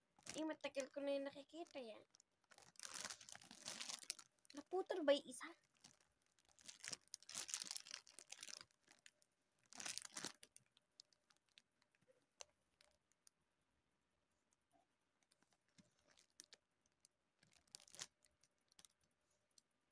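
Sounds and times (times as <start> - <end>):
crinkling and rustling: 0.0 - 13.4, 14.5 - 19.8.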